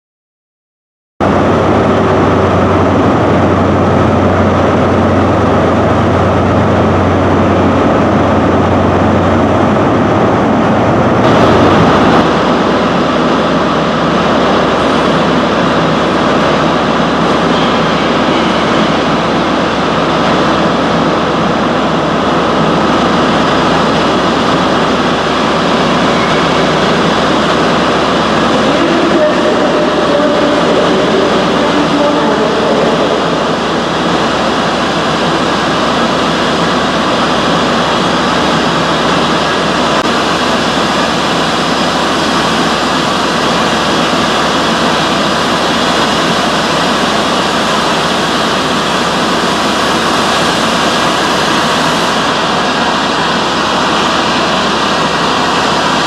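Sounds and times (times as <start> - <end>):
low hum: 1.2 - 36.7
train passing: 1.2 - 56.0.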